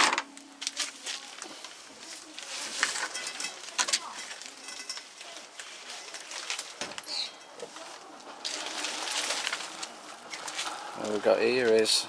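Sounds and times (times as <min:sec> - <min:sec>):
small metal objects clicking: 0:02.8 - 0:05.3.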